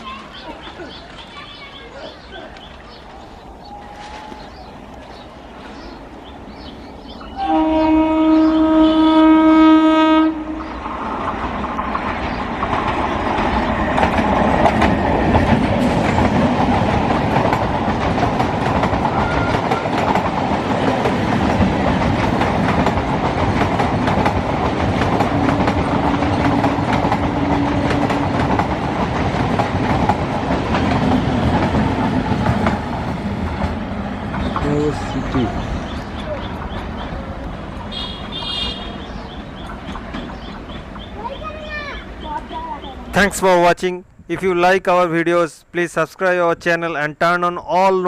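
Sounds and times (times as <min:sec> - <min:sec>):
train wheels rumbling: 0:00.0 - 0:43.7
train horn blast: 0:07.4 - 0:10.7, 0:37.9 - 0:39.1
wheels clicking over rail joints: 0:10.9 - 0:42.6.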